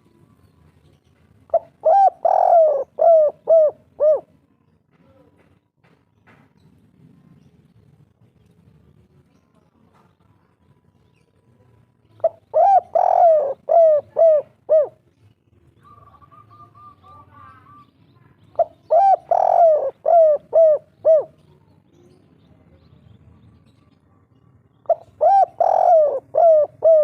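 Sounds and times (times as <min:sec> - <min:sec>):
dove cooing: 0:01.5 - 0:04.4, 0:12.2 - 0:15.0, 0:15.8 - 0:17.8, 0:18.6 - 0:21.6, 0:24.8 - 0:27.0.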